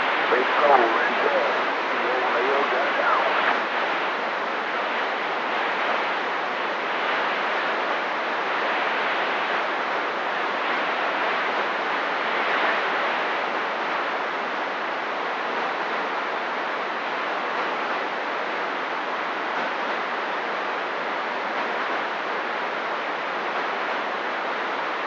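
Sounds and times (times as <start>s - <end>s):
radio static hiss: 0.0s - 13.4s.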